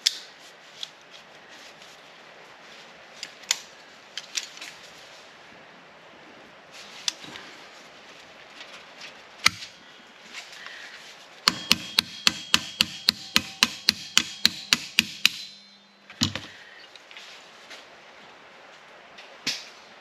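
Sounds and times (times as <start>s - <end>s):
hammer striking metal: 11.5s - 16.5s.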